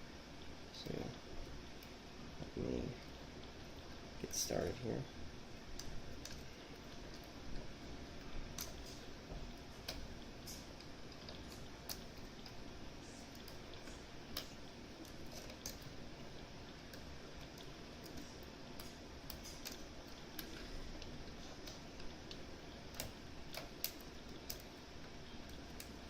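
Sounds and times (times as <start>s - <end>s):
faint steady hiss: 0.0s - 26.0s.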